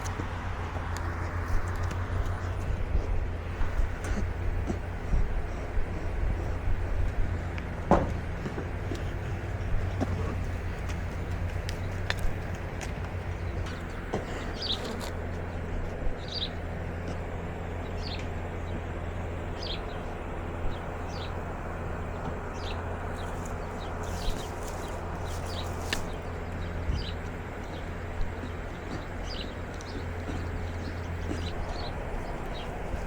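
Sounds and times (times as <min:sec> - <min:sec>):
low background rumble: 0:00.0 - 0:33.0
bird chirping: 0:08.5 - 0:15.6, 0:16.2 - 0:33.0.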